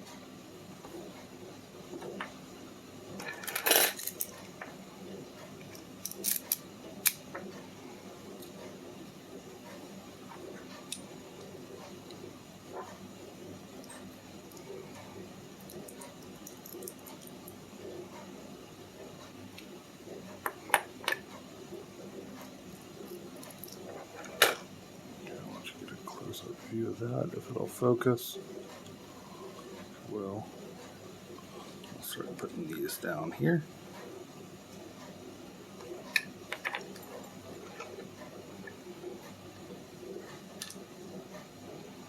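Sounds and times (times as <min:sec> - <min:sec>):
small metal parts clinking: 0:03.2 - 0:04.3, 0:06.0 - 0:06.6
lock parts clicking: 0:06.0 - 0:07.2.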